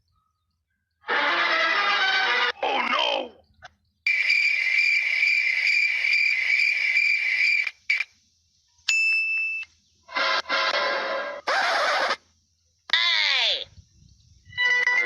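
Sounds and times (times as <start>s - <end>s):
crickets chirping: 2.8s - 10.1s.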